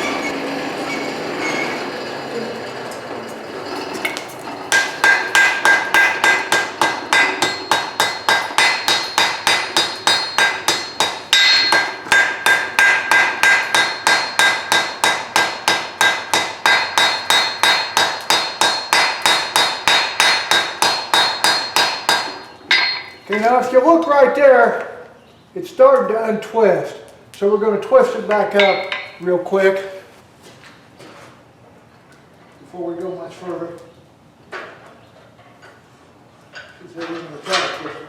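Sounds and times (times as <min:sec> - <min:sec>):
hammer striking steel on anvil: 0:04.0 - 0:23.4, 0:28.5 - 0:29.2
anvil ringing: 0:04.1 - 0:23.5, 0:28.5 - 0:29.2.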